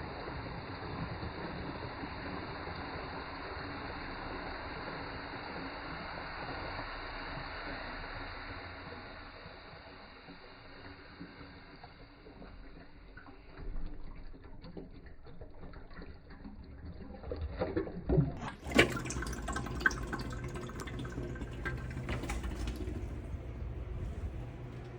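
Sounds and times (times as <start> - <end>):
toilet flushing and refilling: 0.0 - 24.9
water splashing: 13.4 - 24.9.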